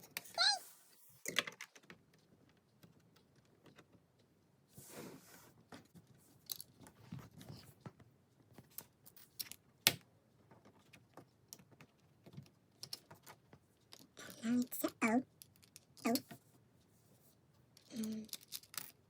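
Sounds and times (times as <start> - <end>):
plastic toy bricks clicking: 17.8 - 19.0.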